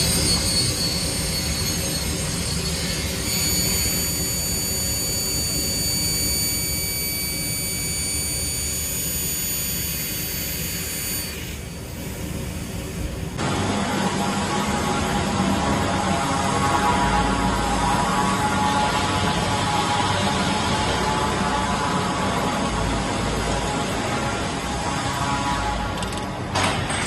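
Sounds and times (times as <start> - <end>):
mitre saw blade whining: 0.0 - 13.4.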